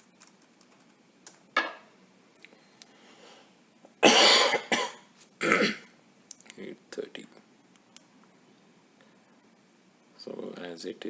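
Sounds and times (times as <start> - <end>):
person clearing throat: 4.0 - 5.9.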